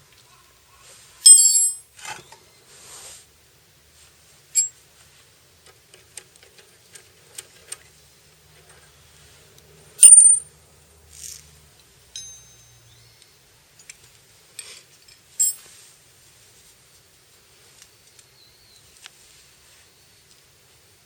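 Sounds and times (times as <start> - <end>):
metal tools clinking: 1.2 - 1.8, 4.6 - 4.8, 10.0 - 10.5, 12.1 - 13.0, 14.6 - 15.8.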